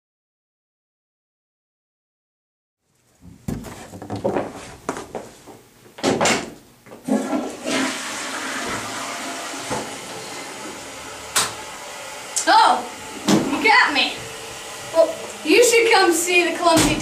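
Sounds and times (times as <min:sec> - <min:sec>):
knocks and clattering handling: 0:03.2 - 0:05.3.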